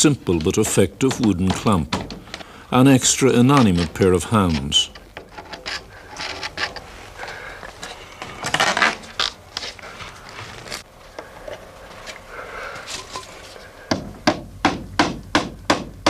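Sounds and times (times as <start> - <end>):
wood scraping: 0.0 - 13.8
wood knocking on wood: 0.4 - 2.5.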